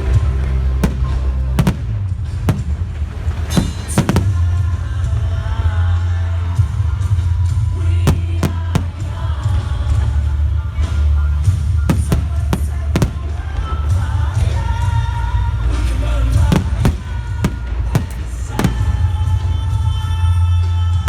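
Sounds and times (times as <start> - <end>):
fireworks bangs: 0.0 - 5.6, 6.3 - 20.3
loud music with heavy bass: 11.9 - 14.3.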